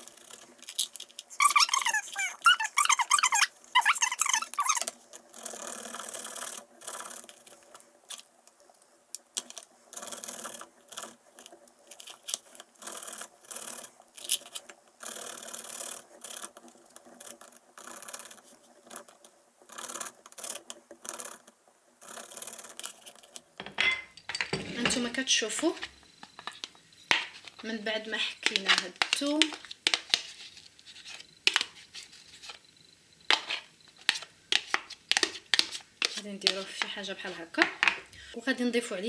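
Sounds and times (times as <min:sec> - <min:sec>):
garlic grating strokes: 0:01.3 - 0:04.9.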